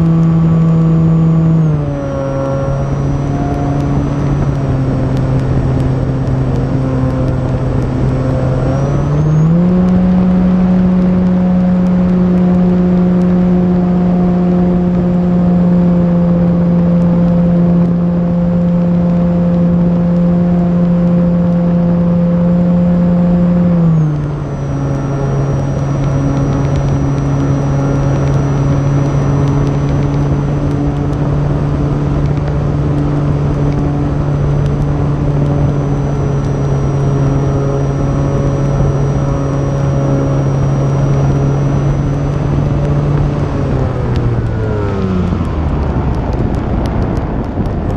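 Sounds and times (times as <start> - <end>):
electric motor and propeller: 0.0 - 47.9.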